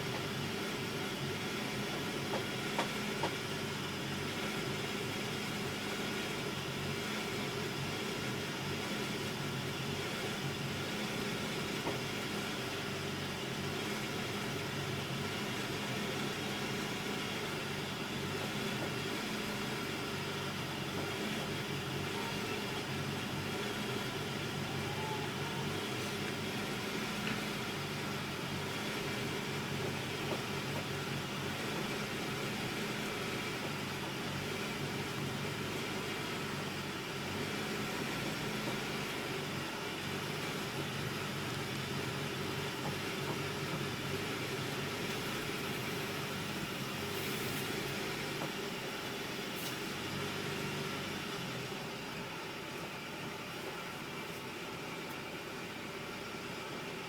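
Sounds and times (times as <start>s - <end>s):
car engine idling roughly: 0.0s - 57.0s.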